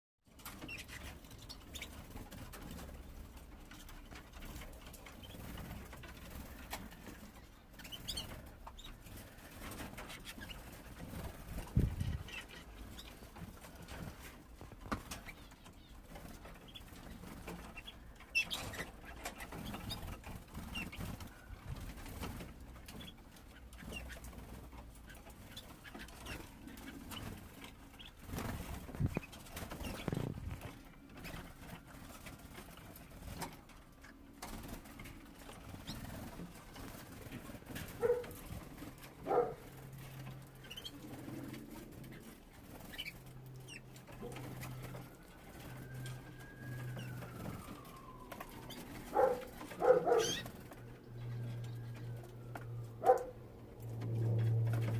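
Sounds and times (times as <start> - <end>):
canaries chirping: 0.3 - 54.9
rustling in a cage: 0.3 - 54.9
wing flutters: 0.3 - 54.9.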